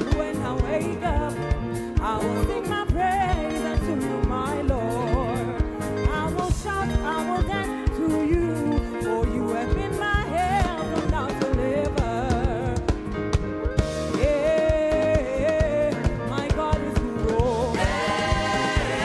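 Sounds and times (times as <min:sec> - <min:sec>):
band with steady drum beat: 0:00.0 - 0:19.0
voices singing: 0:17.6 - 0:19.0.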